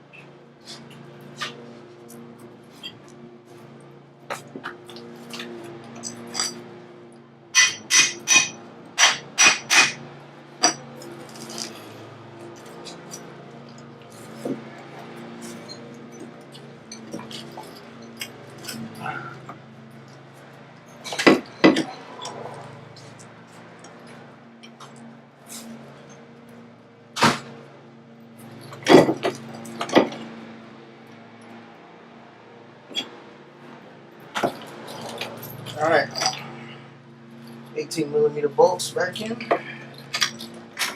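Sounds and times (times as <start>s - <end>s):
hammer striking metal: 7.6s - 10.0s
metal tools knocking and clanking: 7.6s - 10.0s, 10.6s - 10.9s, 21.0s - 22.3s, 34.4s - 36.5s.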